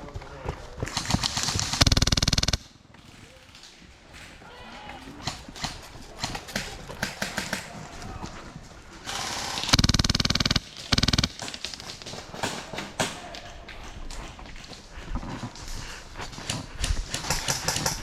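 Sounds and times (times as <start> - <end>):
airsoft gun firing bursts: 0.9 - 2.7, 9.1 - 12.0, 17.1 - 18.0.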